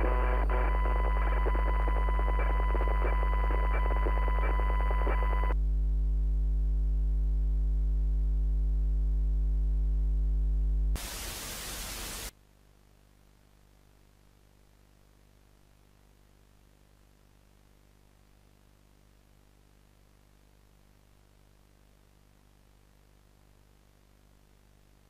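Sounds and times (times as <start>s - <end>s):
loud static: 0.0s - 25.0s
faint hiss: 11.0s - 12.4s.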